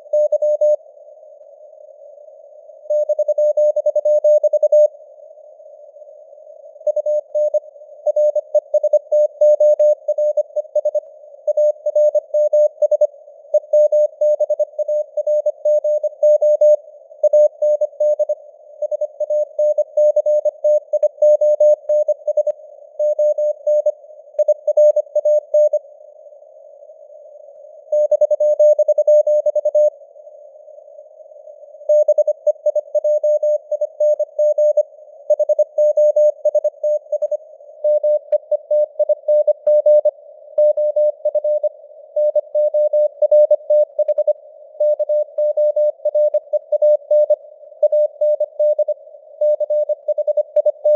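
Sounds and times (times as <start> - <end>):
morse code beeps: 31.9 - 50.9.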